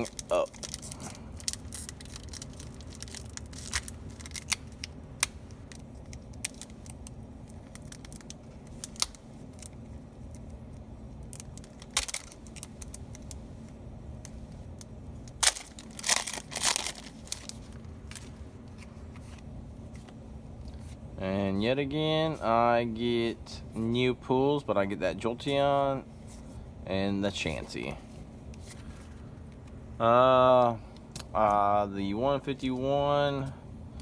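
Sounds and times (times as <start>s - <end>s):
foil packs crinkling: 0.0s - 10.5s, 11.2s - 13.4s, 15.3s - 18.4s
steady low hum: 0.0s - 34.0s.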